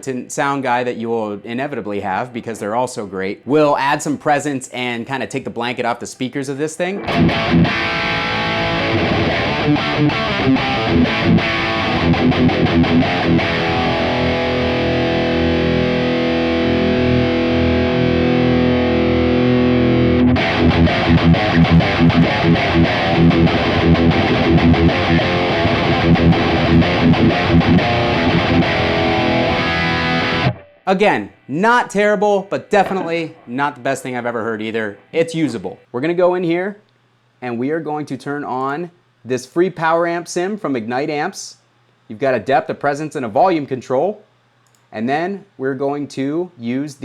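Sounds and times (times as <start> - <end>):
distorted electric guitar riffing: 7.0 - 31.6, 32.8 - 33.8.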